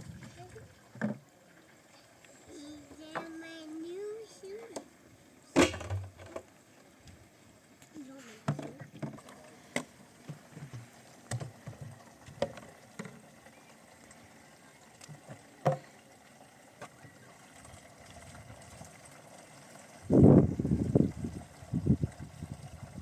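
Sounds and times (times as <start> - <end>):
knocks and light clatter: 0.9 - 1.2, 5.6 - 6.5, 8.4 - 13.2.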